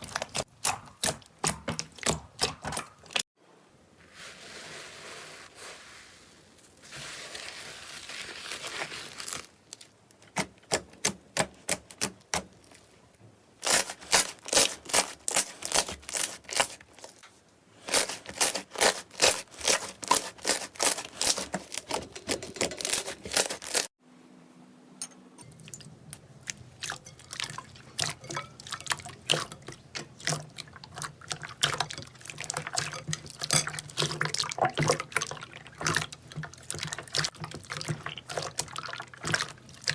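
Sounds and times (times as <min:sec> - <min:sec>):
slime squishing: 0:00.0 - 0:03.2, 0:13.6 - 0:17.2, 0:17.8 - 0:23.9, 0:25.6 - 0:39.9.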